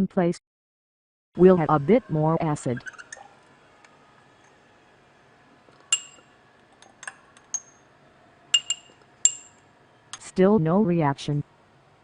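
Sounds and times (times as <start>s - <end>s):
glassware clinking: 5.9s - 6.3s, 7.0s - 7.8s, 8.6s - 9.6s.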